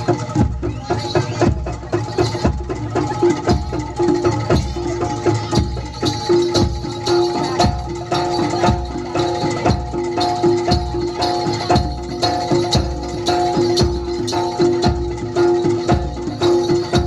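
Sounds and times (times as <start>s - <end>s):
percussion beat: 0.0s - 17.0s
shaken jingles: 0.0s - 17.0s.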